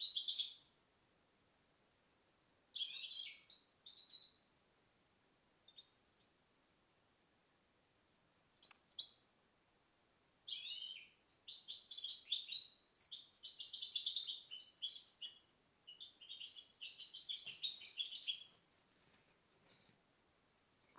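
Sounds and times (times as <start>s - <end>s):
bird singing high twittering notes: 2.8s - 4.5s, 10.5s - 18.5s.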